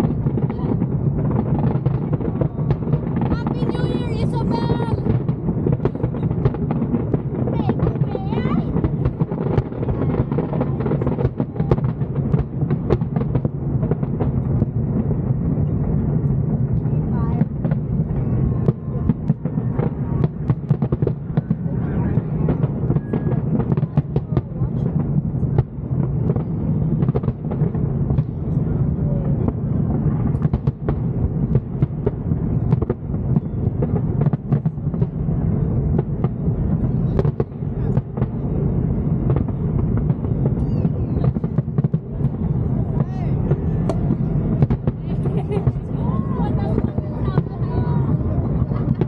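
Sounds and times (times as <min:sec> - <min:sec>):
continuous low rumble: 0:00.0 - 0:49.0
fireworks booming: 0:00.0 - 0:49.0
fireworks sharp cracks: 0:00.0 - 0:49.0.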